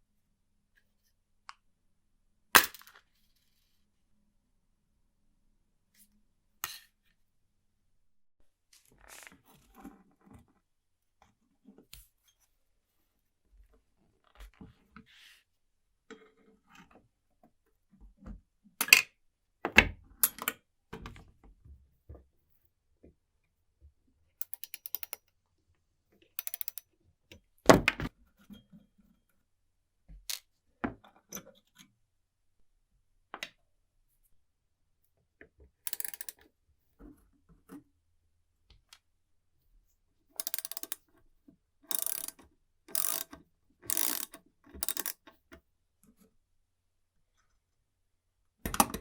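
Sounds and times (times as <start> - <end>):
alarm clock winding ratchet clicking: 24.4 - 25.3, 26.4 - 26.8, 35.9 - 36.4, 40.4 - 41.0, 41.9 - 45.2.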